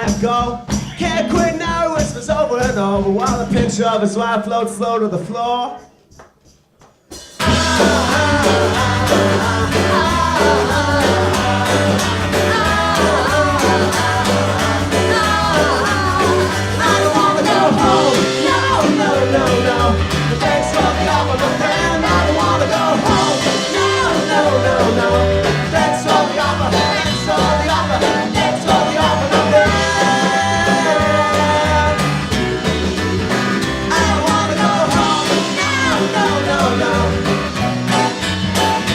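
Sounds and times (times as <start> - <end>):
rock band playing instrumental: 7.2 - 38.9.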